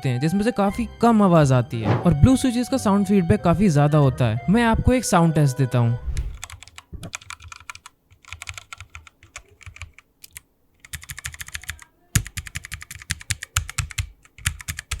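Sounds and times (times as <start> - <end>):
fast typing on mechanical keyboard: 6.4 - 15.0.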